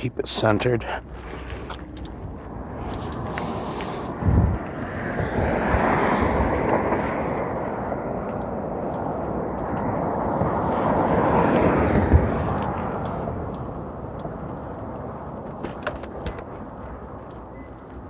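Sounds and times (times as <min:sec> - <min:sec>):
wind rushing over microphone: 0:01.4 - 0:17.3.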